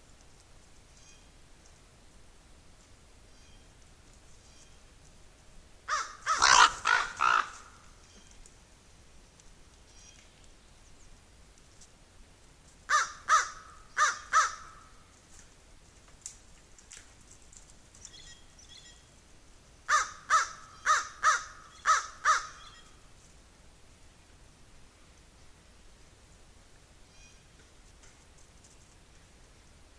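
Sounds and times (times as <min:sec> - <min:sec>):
crow cawing: 0:05.9 - 0:07.8, 0:12.9 - 0:14.9, 0:19.9 - 0:22.6.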